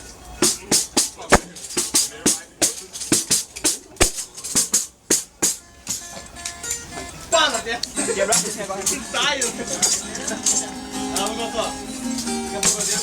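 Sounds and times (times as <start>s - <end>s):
hand percussion strikes with rattle: 0.5s - 6.9s, 12.1s - 13.0s.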